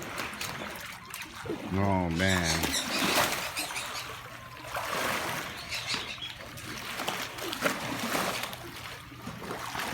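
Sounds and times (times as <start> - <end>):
pool water sloshing and splashing: 0.0 - 9.9.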